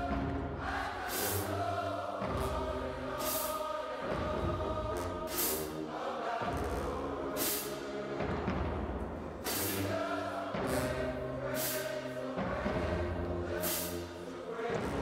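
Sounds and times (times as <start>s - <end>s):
marching band playing gospel music: 0.0s - 15.0s.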